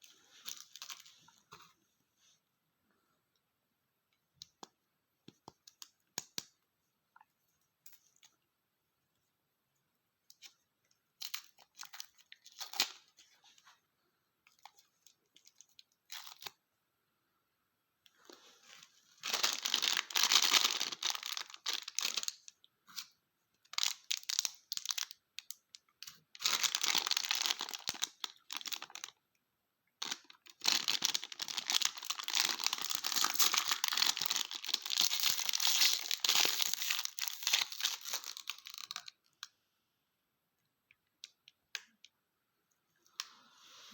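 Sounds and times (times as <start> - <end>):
plastic wrappers crinkling: 0.4 - 1.1, 11.2 - 13.1, 18.7 - 23.0, 23.7 - 29.2, 30.0 - 39.2.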